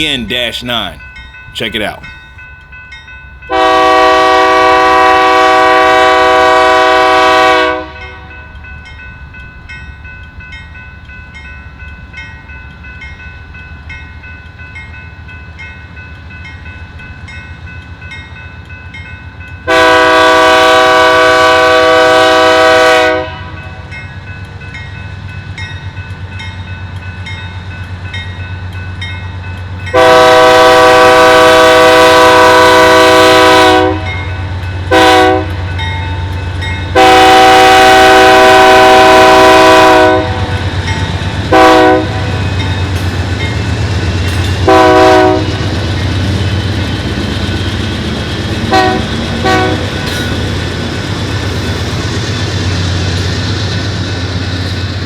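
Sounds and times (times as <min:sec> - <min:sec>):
locomotive air horn blasts: 0:03.5 - 0:08.1, 0:19.7 - 0:23.6, 0:29.9 - 0:34.1, 0:34.9 - 0:35.6, 0:37.0 - 0:40.6, 0:41.5 - 0:42.4, 0:44.6 - 0:45.6, 0:48.7 - 0:49.8.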